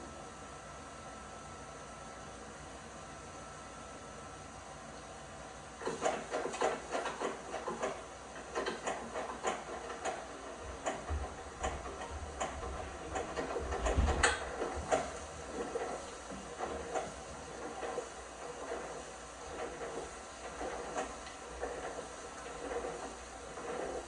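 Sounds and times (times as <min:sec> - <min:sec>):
washing machine drum tumbling: 0:10.6 - 0:17.3.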